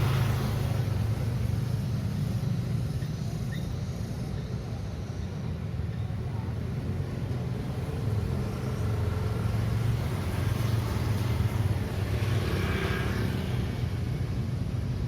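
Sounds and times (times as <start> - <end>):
vehicle passing: 0.0 - 1.8, 6.9 - 14.3
street traffic rumble: 0.0 - 15.0.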